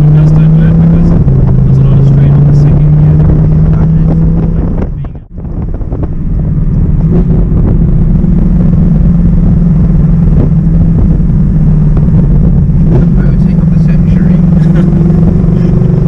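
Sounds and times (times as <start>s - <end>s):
car engine revving: 0.0s - 16.0s.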